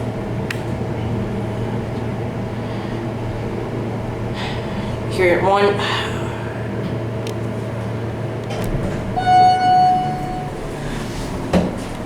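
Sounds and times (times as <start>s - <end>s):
elevator hum: 0.0s - 12.0s
elevator chime: 9.0s - 12.0s.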